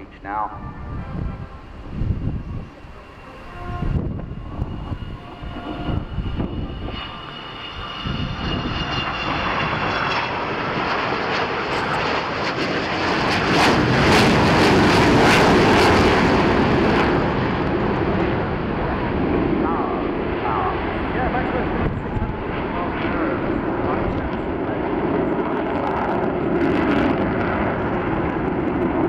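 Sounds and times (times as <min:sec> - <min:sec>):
thin high whine: 0:00.0 - 0:09.4
jet engines roaring on flypast: 0:00.0 - 0:29.0.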